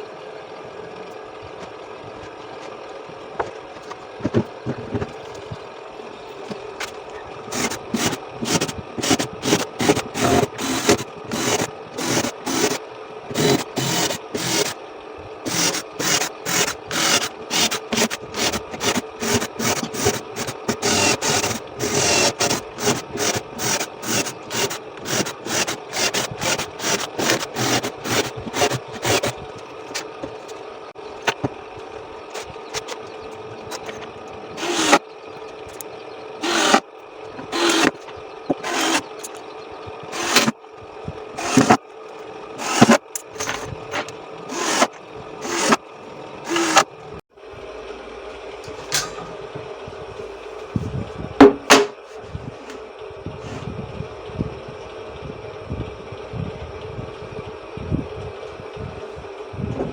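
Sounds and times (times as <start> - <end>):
steady hum: 0.0 - 59.9.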